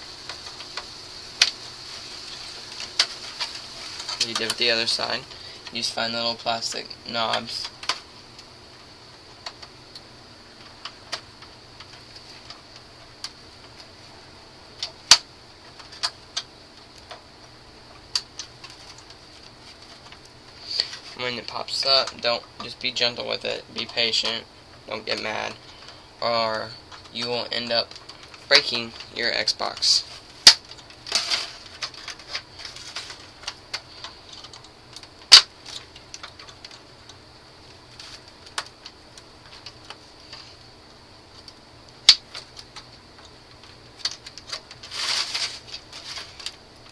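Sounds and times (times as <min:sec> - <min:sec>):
plastic clips snapping: 0:30.4 - 0:37.2.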